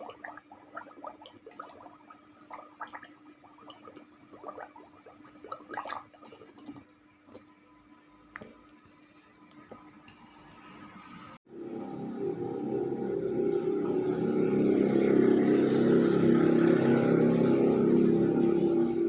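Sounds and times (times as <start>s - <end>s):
person gargling water: 0.0s - 6.8s, 13.4s - 19.0s.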